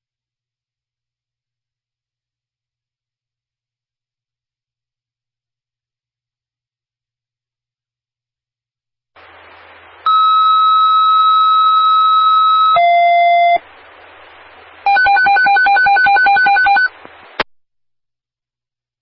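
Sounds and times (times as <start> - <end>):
radio squelch hiss: 9.2 - 15.0, 16.2 - 17.5
two-tone page tone: 10.1 - 13.6, 14.9 - 17.0.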